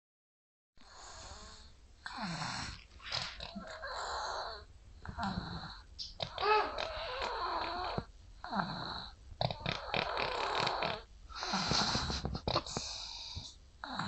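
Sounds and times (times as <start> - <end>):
baby snoring: 0.8 - 14.0.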